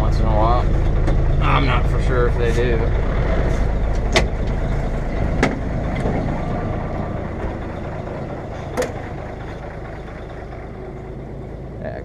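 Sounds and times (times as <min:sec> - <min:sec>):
diesel truck engine idling: 0:00.0 - 0:12.0
sharp metallic clanks: 0:03.2 - 0:10.7.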